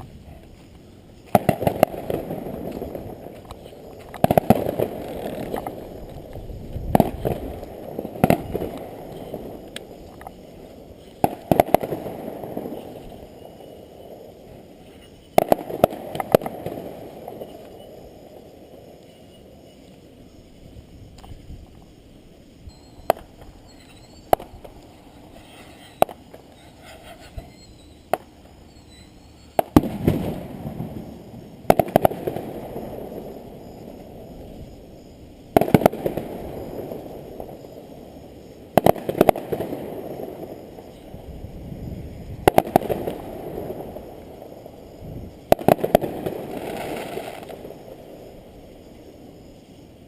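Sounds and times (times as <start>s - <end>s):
firework pops: 1.2s - 10.4s, 11.0s - 13.1s, 15.0s - 17.7s, 23.0s - 23.5s, 24.3s - 24.8s, 25.8s - 26.4s, 28.1s - 28.3s, 29.5s - 31.0s, 31.6s - 32.8s, 35.5s - 36.4s, 38.7s - 39.8s, 42.4s - 43.2s, 45.5s - 47.7s
firework shell bursts: 6.8s - 10.0s, 11.0s - 13.3s, 23.0s - 28.3s.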